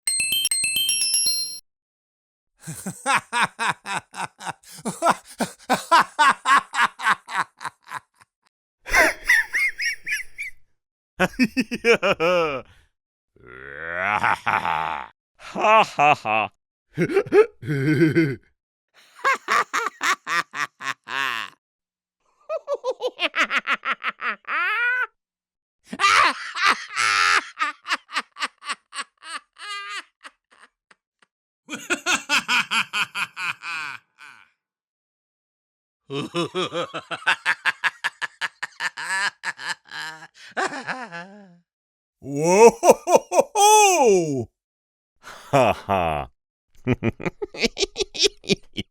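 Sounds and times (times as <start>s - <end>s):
sparkling chime jingle: 0.1s - 1.6s
man laughing: 2.6s - 8.2s, 8.9s - 10.4s, 11.2s - 12.8s, 14.0s - 21.6s, 22.5s - 25.1s, 25.9s - 30.7s, 31.7s - 34.5s, 36.1s - 41.6s, 42.2s - 44.5s, 45.3s - 46.3s, 46.9s - 48.9s.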